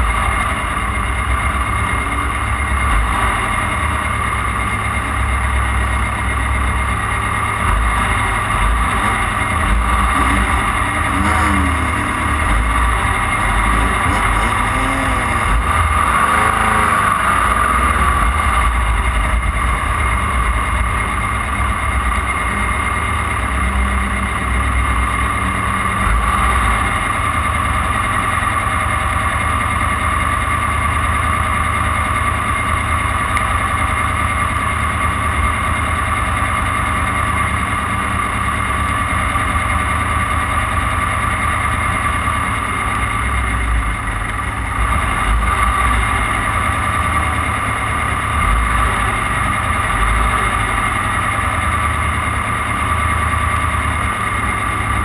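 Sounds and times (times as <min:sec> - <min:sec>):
steady whine: 0:00.0 - 0:29.3
race car engine running: 0:00.0 - 0:55.0.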